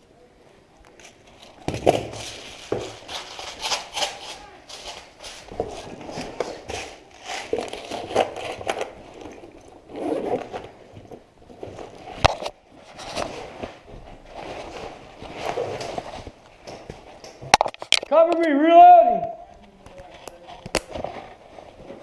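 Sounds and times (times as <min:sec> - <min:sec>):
rustling and scraping: 0:00.9 - 0:18.1, 0:19.6 - 0:22.0.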